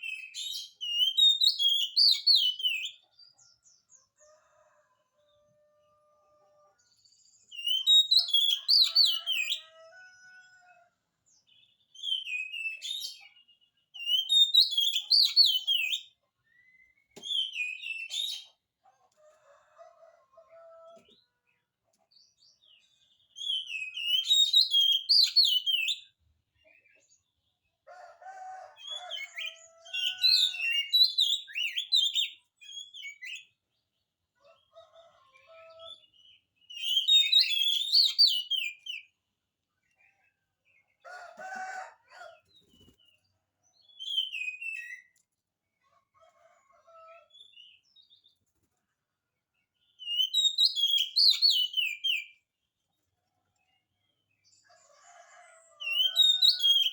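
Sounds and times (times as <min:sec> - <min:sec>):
magpie-robin singing: 0:00.0 - 0:03.0, 0:07.5 - 0:09.6, 0:11.9 - 0:13.3, 0:14.0 - 0:18.5, 0:23.3 - 0:26.1, 0:28.8 - 0:33.5, 0:36.6 - 0:39.1, 0:43.8 - 0:45.1, 0:49.9 - 0:52.4, 0:55.8 - 0:56.9.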